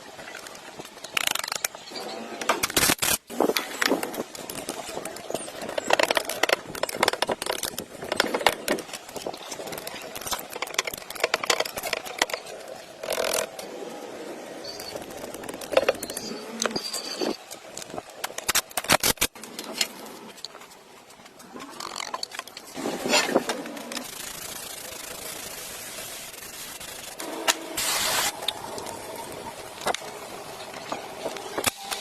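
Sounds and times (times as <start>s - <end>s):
hand tools clicking and scraping on metal: 0.2s - 13.7s, 14.8s - 24.1s.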